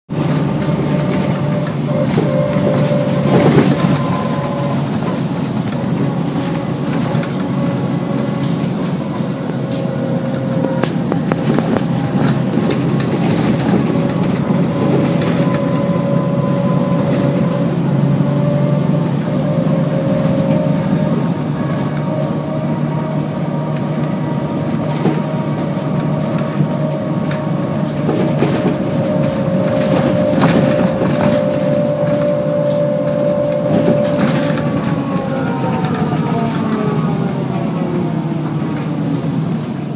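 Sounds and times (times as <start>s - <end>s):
bus engine droning: 0.0s - 39.9s
loud clatter: 0.1s - 17.8s, 23.8s - 32.8s
rattles and clicks: 0.1s - 39.9s.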